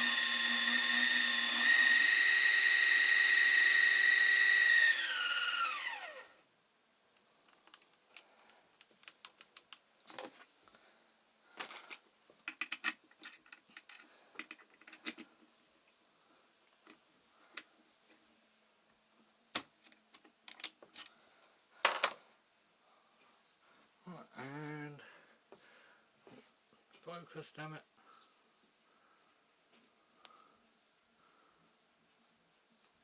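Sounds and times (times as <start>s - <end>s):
small metal parts clinking: 11.6s - 15.3s.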